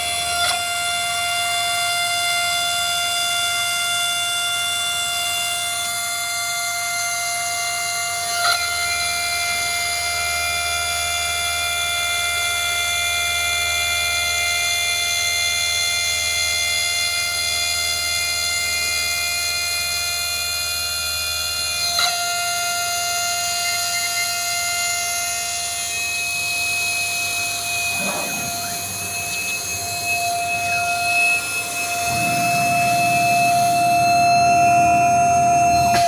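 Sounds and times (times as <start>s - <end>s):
machine high whine: 0.0s - 36.0s
low hum: 27.3s - 36.0s.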